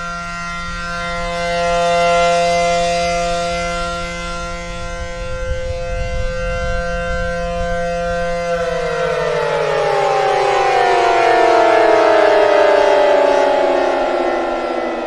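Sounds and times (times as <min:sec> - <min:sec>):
outdoor warning siren: 0:00.0 - 0:15.0.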